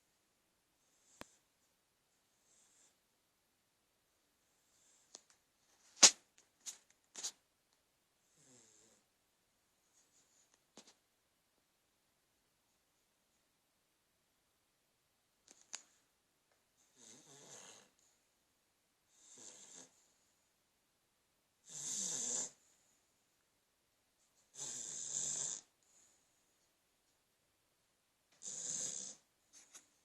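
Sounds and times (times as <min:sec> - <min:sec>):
dog snoring: 0:08.3 - 0:09.1, 0:16.8 - 0:18.0, 0:19.1 - 0:20.0, 0:21.6 - 0:22.6, 0:24.5 - 0:25.7, 0:28.3 - 0:29.3.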